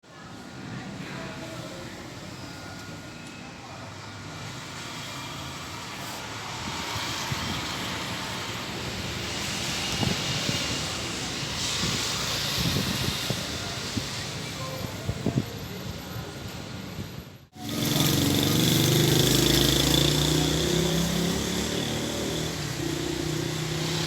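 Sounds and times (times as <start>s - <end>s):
wind rushing: 9.0s - 14.4s.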